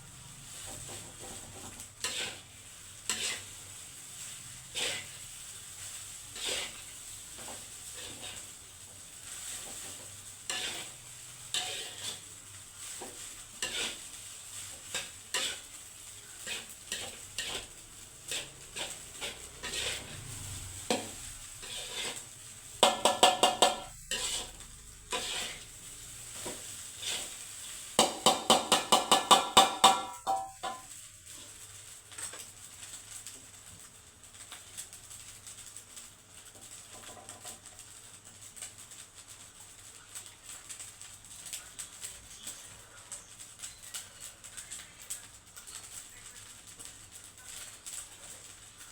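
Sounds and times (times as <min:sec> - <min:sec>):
light sizzle: 0:00.0 - 0:48.9
spatula scraping pan: 0:00.5 - 0:31.5
spatula knocking against pan: 0:22.8 - 0:23.9, 0:28.0 - 0:30.9.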